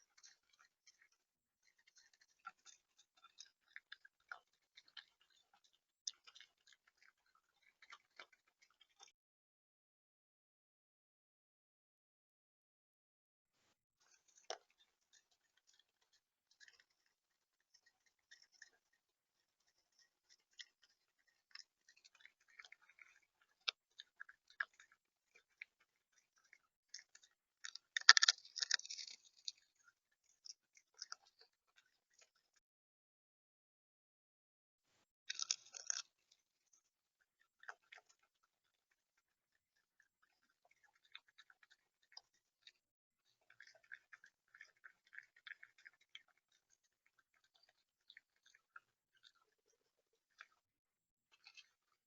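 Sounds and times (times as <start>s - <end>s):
bird pecking seed: 14.0s - 32.4s, 35.3s - 50.6s
bird pecking and cracking seed: 19.6s - 32.3s, 35.3s - 36.4s.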